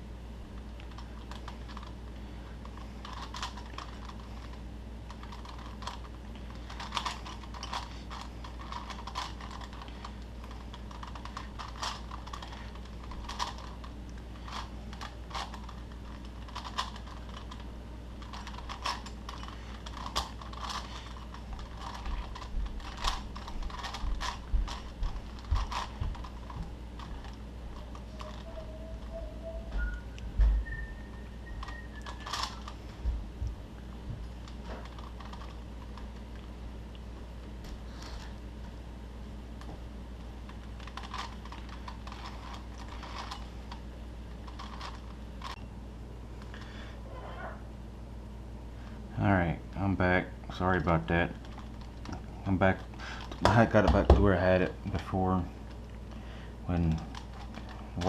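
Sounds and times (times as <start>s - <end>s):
steady low hum: 0.0s - 58.0s
plastic puzzle cube clicking: 3.0s - 4.2s, 6.8s - 12.5s, 18.2s - 20.8s, 31.6s - 32.7s, 40.8s - 43.4s.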